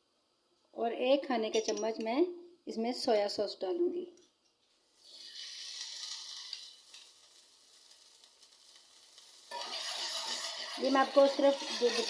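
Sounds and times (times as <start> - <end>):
sauce sizzling in hot oil: 4.8 - 12.0.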